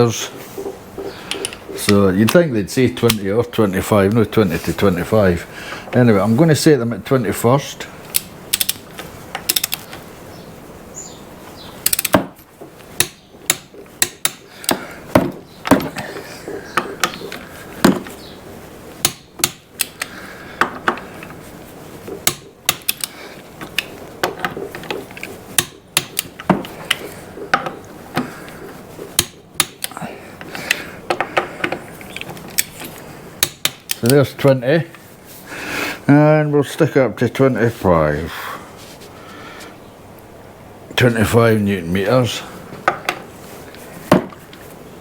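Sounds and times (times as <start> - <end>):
torque wrench clicking: 8.1 - 10.0, 11.8 - 12.2, 22.2 - 23.9.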